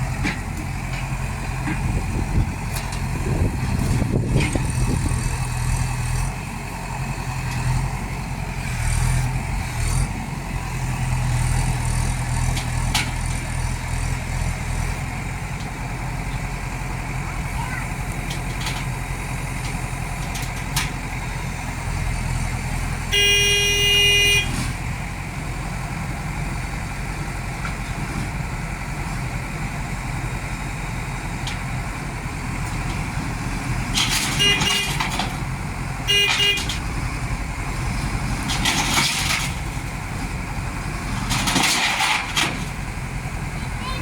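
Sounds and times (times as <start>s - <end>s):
diesel engine running: 0.0s - 44.0s
vehicle horn: 23.1s - 24.7s, 34.2s - 35.0s, 36.0s - 36.8s.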